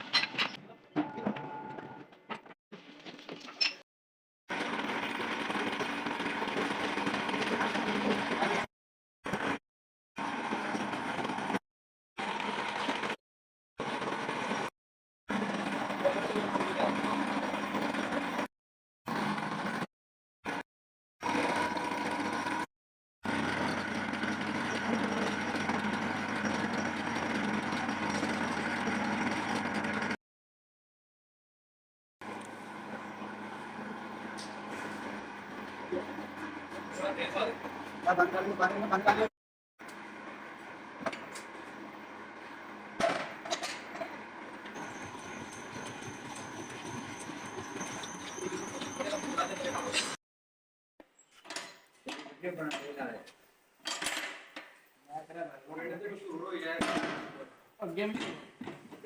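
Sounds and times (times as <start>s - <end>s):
workshop machinery noise: 0.0s - 3.8s, 4.5s - 8.7s, 9.3s - 9.6s, 10.2s - 11.6s, 13.8s - 14.7s, 15.3s - 18.5s, 21.2s - 30.2s, 32.2s - 50.2s, 56.6s - 59.0s.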